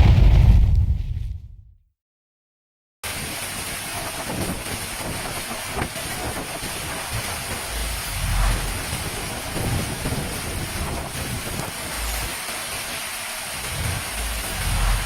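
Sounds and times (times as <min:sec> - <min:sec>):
hailstorm downpour hiss: 0:03.0 - 0:15.0
hail impacts: 0:03.1 - 0:15.0
wind rumble on microphone: 0:04.0 - 0:12.4.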